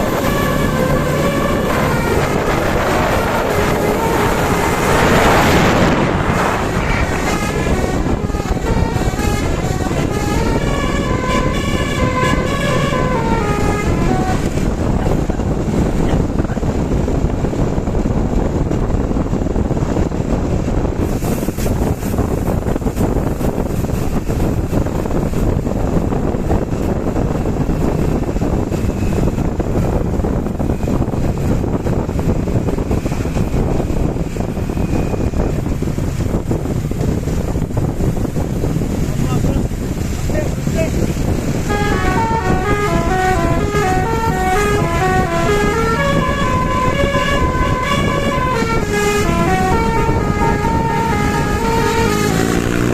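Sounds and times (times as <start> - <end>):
bus horn playing melody: 0.0 - 15.2, 41.5 - 52.9
rumble of wind and road noise: 0.0 - 52.9.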